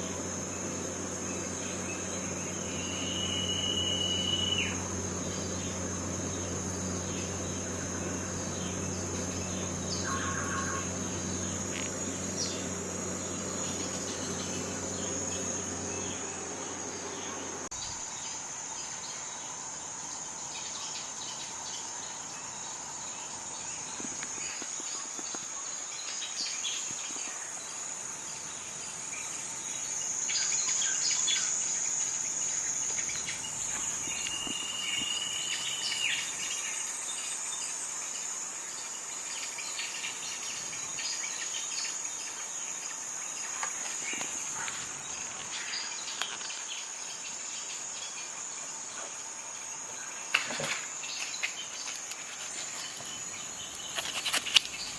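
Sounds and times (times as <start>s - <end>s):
low steady hum: 0.0s - 24.0s
crickets chirring: 0.0s - 54.9s.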